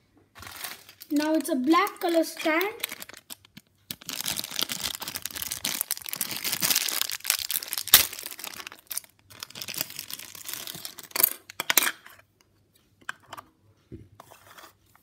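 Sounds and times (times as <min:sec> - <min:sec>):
plastic packaging crinkling and tearing: 0:00.4 - 0:11.3.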